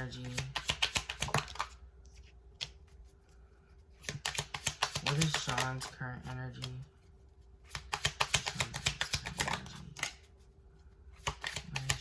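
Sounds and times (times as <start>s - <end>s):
cards being shuffled: 0.0s - 7.0s, 7.6s - 10.5s, 11.1s - 12.0s.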